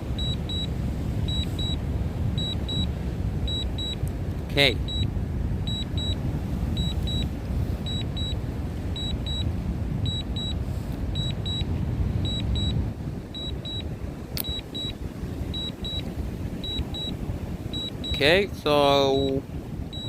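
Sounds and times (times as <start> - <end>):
wind buffeting microphone: 0.0 - 20.0
short high warning beeps: 0.1 - 1.8, 2.4 - 2.9, 3.5 - 4.0, 4.6 - 5.1, 5.7 - 6.2, 6.8 - 8.4, 9.0 - 10.6, 11.2 - 12.8, 13.4 - 18.4, 19.0 - 20.0.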